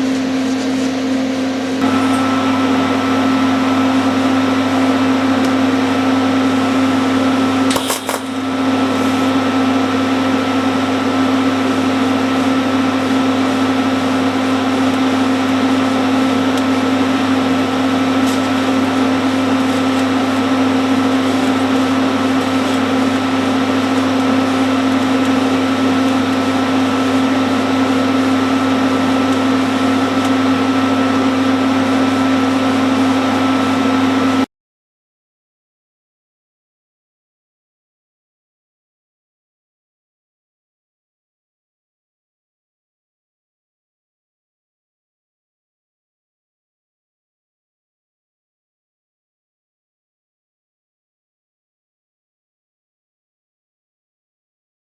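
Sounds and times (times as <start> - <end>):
welding arc hum and hiss: 0.0 - 34.5.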